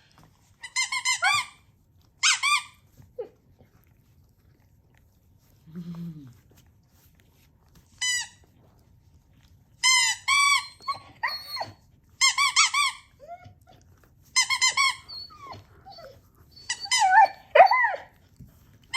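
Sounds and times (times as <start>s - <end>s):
rubber squeaky toy squeaks: 0.6s - 2.8s, 8.0s - 8.4s, 9.8s - 13.5s, 14.3s - 18.0s
dog whining and howling: 10.0s - 18.2s.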